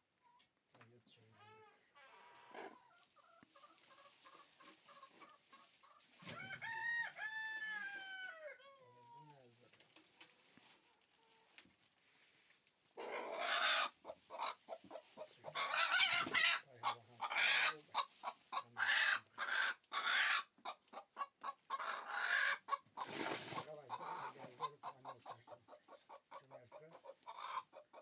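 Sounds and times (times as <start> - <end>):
chickens clucking: 1.4 - 11.6, 12.8 - 28.0
chicken squawking: 13.0 - 26.1, 27.0 - 28.0.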